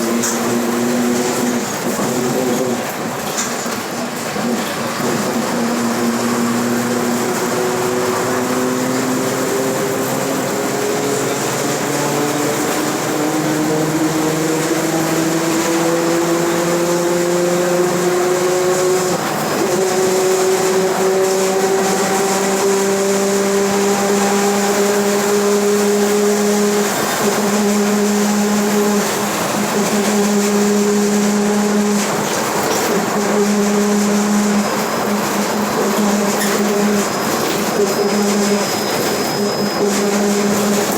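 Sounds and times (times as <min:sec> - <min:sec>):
bus differential whine: 0:00.0 - 0:40.9.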